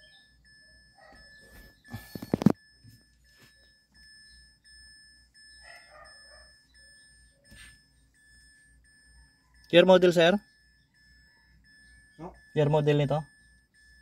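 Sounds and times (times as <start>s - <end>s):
dog barking: 1.0s - 1.4s, 5.6s - 6.6s.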